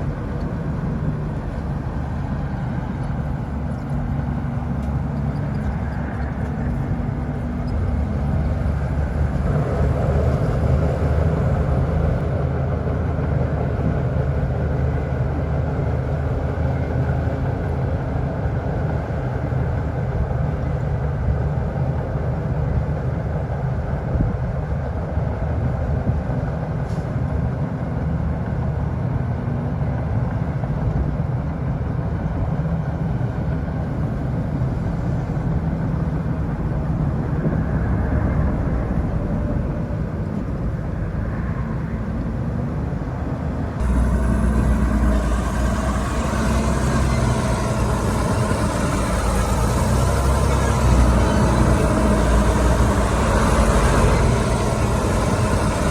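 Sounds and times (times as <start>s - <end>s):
bulldozer diesel engine running: 0.0s - 27.0s, 30.6s - 55.9s.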